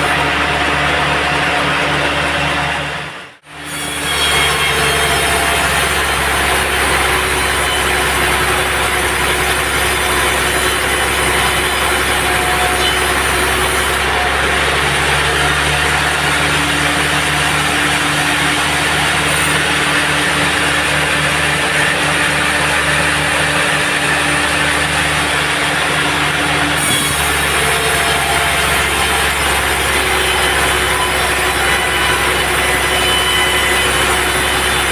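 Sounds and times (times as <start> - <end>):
sawmill machinery humming: 0.0 - 34.9.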